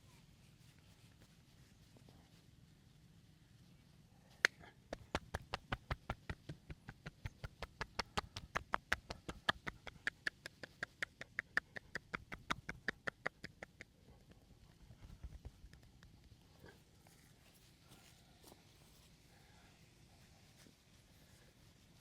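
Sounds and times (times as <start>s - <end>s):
hands slapping body: 4.4s - 11.2s.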